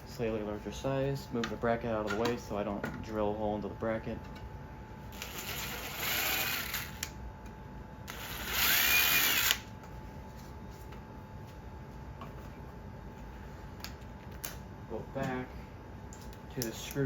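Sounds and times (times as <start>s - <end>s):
power drill boring into wood: 5.2s - 6.9s, 8.1s - 9.6s.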